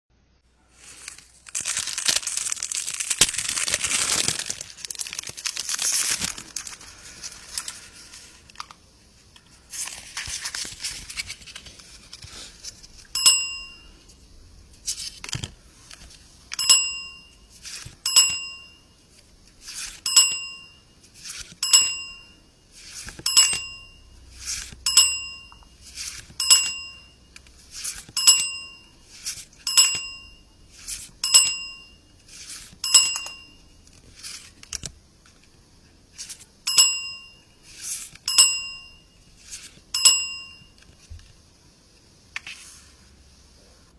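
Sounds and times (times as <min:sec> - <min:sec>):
foil wrapper tearing and crinkling: 0:00.8 - 0:08.7.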